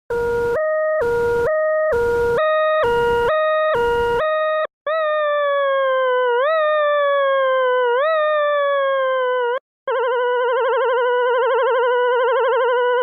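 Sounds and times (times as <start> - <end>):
falling electronic tone: 0.1 - 4.7
electronic two-tone siren: 0.1 - 13.0.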